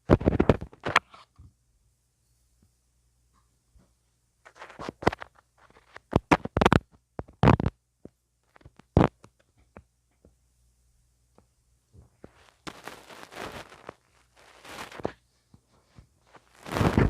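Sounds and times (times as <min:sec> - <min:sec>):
tool scraping a microphone: 0:16.3 - 0:17.0.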